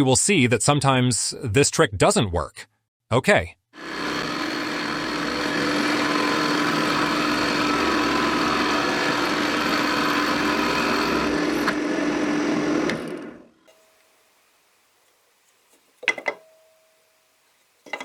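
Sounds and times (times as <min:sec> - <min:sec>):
drill press cutting into wood: 0:03.8 - 0:13.6.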